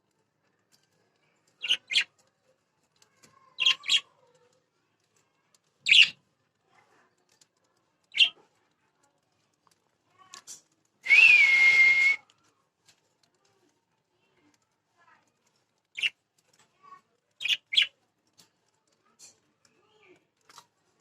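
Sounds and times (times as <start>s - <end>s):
budgerigar chirping: 5.9s - 6.2s.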